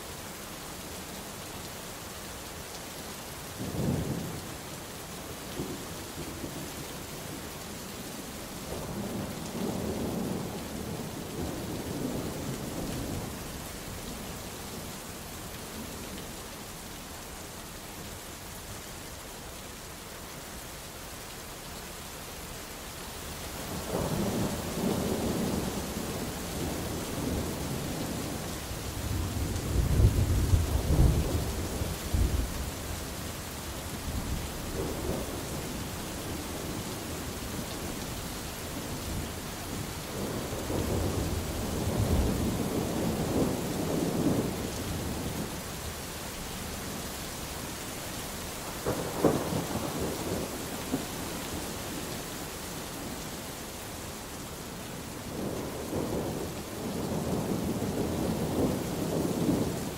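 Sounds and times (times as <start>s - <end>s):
steady rain: 0.0s - 59.9s
thunder rolling and cracking: 48.6s - 51.7s.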